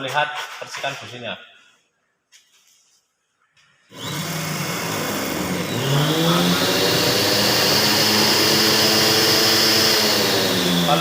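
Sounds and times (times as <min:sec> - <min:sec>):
motor whining: 0:03.9 - 0:11.0.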